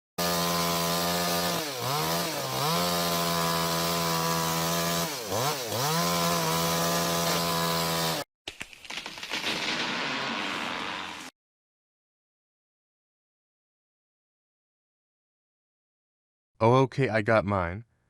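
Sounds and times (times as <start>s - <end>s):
chainsaw engine at high revs: 0.2s - 8.3s.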